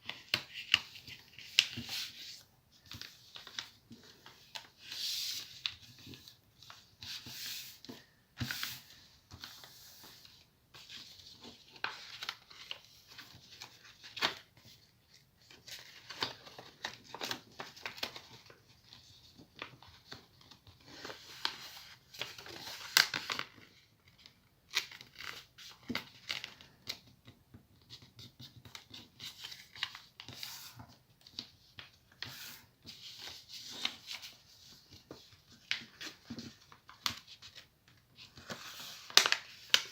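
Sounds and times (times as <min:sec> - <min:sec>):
paper rustling and folding: 0:00.0 - 0:39.9.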